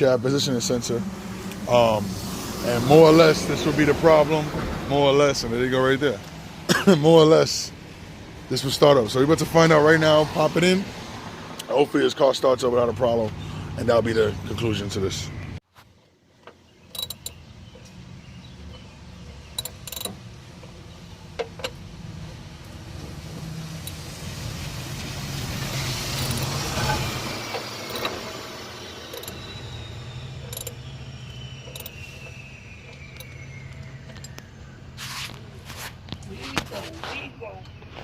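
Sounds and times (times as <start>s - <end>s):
passing vehicle: 0.0s - 15.6s, 17.0s - 37.5s
tools clicking and knocking: 16.4s - 17.4s, 18.7s - 20.2s, 26.2s - 26.5s, 27.5s - 28.2s, 29.1s - 29.4s, 30.4s - 30.8s, 31.6s - 32.0s.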